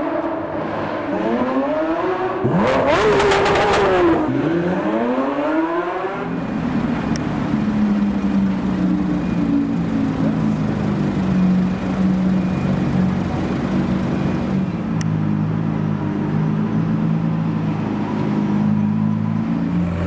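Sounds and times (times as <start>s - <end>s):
car engine revving and crackling: 1.1s - 15.1s, 19.2s - 20.0s
car engine idling: 2.6s - 4.3s, 6.2s - 14.9s.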